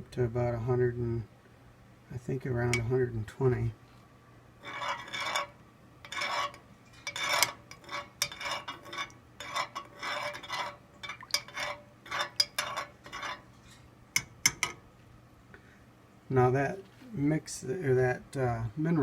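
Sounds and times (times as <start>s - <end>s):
spoon scraping inside a pot: 4.6s - 13.9s.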